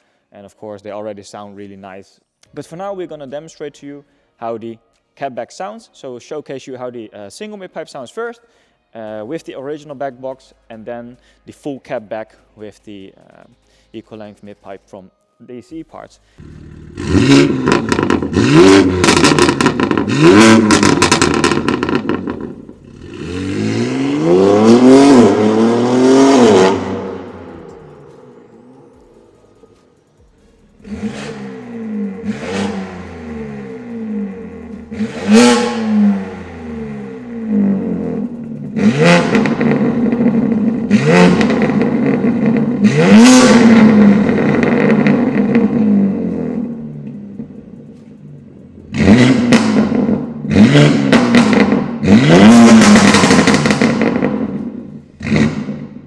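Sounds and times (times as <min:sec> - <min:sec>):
car engine idling: 0:16.4 - 0:56.0
car engine revving: 0:16.4 - 0:56.0.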